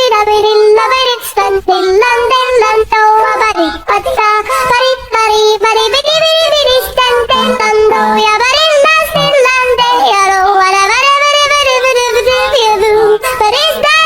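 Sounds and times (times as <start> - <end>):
high-pitched singing voice: 0.0 - 14.0
backing music: 7.3 - 8.5, 9.1 - 9.5.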